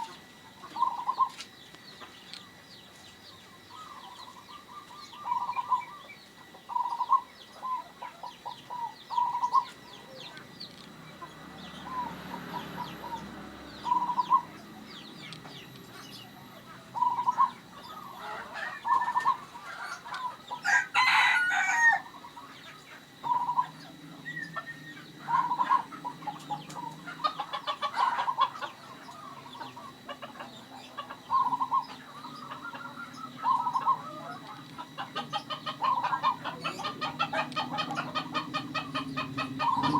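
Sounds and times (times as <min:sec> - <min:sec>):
chickens clucking: 0:00.0 - 0:39.9
dove cooing: 0:00.0 - 0:39.9
rooster crowing: 0:17.0 - 0:30.0, 0:31.2 - 0:39.9.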